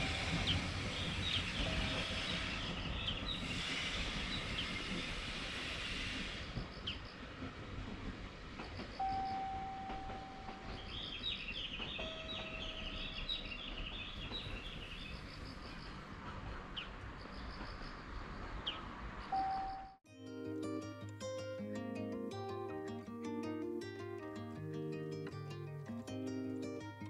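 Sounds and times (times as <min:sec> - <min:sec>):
long steady tones: 0:00.0 - 0:02.8, 0:09.0 - 0:10.9
acoustic guitar music: 0:20.1 - 0:27.0.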